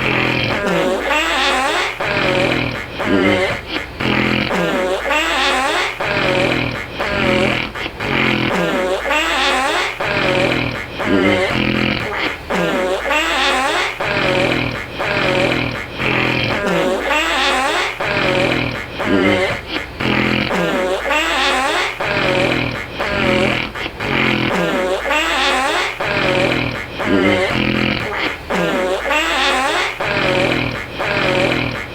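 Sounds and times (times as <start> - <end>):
person snoring: 0.0 - 31.9
fart-like snoring: 10.1 - 12.2, 26.1 - 28.2, 30.1 - 31.9.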